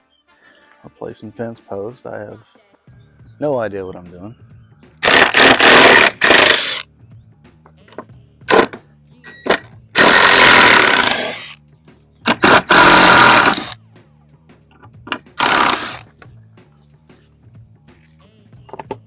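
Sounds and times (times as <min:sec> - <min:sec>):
faint background music: 0:00.0 - 0:19.0
power drill bursts: 0:05.0 - 0:06.8, 0:09.4 - 0:11.5, 0:12.3 - 0:13.8, 0:15.4 - 0:16.1.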